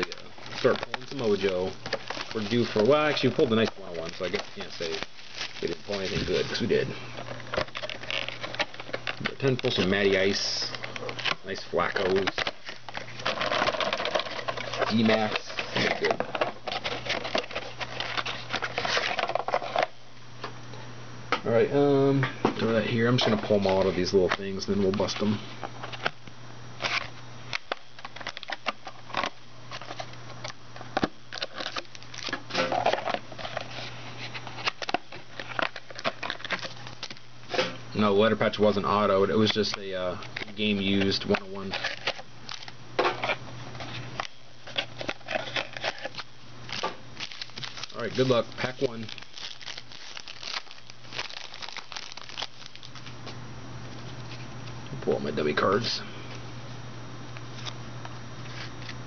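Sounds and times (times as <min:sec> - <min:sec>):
wrapper tearing and crinkling: 0:00.0 - 0:19.9, 0:31.2 - 0:37.2, 0:40.3 - 0:43.4, 0:44.2 - 0:53.2
card packs clicks and rustles: 0:00.0 - 0:20.0, 0:22.6 - 0:26.2, 0:26.8 - 0:53.4
steady low hum: 0:00.0 - 0:59.0.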